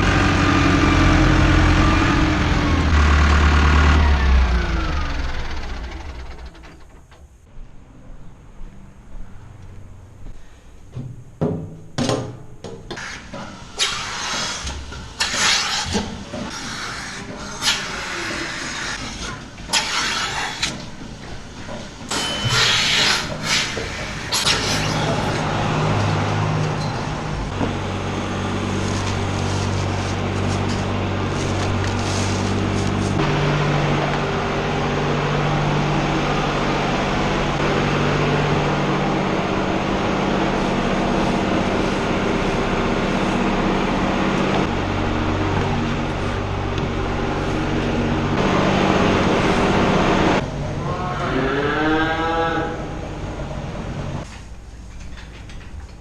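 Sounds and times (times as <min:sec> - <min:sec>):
tractor engine running: 0:00.0 - 0:07.5, 0:24.4 - 0:50.8.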